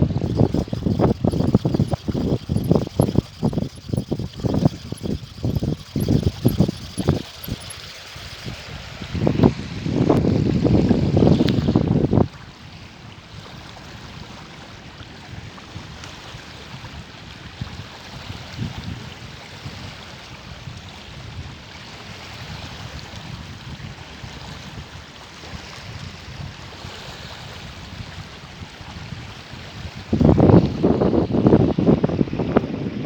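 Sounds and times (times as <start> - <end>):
wind buffeting microphone: 0.0 - 12.1.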